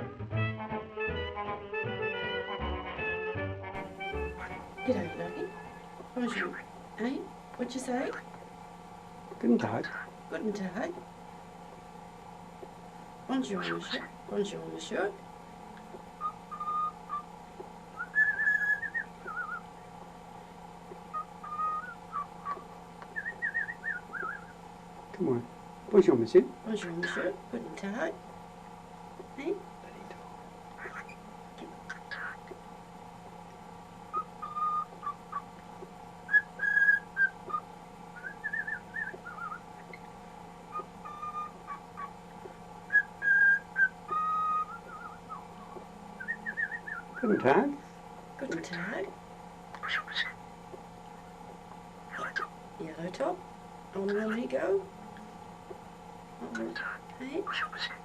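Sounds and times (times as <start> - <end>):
cockatiel whistling and trilling: 13.5 - 14.1, 16.2 - 17.3, 18.0 - 19.6, 21.1 - 24.5, 31.9 - 32.4, 34.1 - 35.4, 36.3 - 37.6, 38.2 - 40.0, 40.7 - 42.1, 42.9 - 47.3, 49.8 - 50.4, 56.6 - 58.0.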